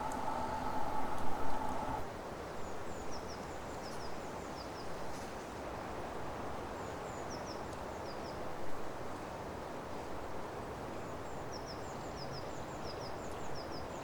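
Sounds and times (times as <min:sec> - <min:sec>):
bird chirping: 0:00.0 - 0:02.0
steady rushing noise: 0:00.0 - 0:02.0.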